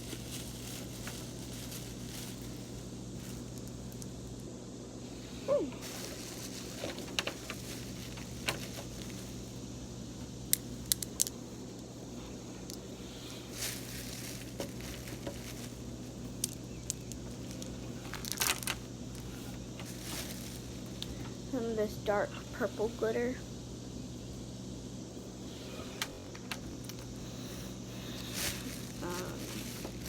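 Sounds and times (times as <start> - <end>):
plastic bag crinkling: 0.0 - 4.2, 5.8 - 9.6, 13.4 - 21.2, 27.3 - 30.0.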